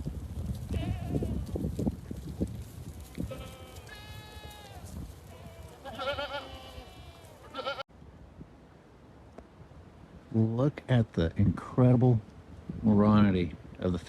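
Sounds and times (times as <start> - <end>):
goats bleating: 0.7 - 1.5, 3.1 - 7.8.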